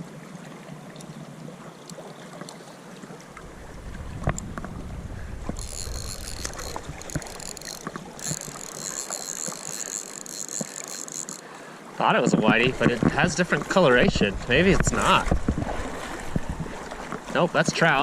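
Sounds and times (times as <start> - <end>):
river current rushing: 2.7 - 12.8
wind on microphone: 3.4 - 8.8, 14.0 - 17.1
high even buzz: 3.4 - 11.4
fishing rod handling knocks: 5.4 - 11.4.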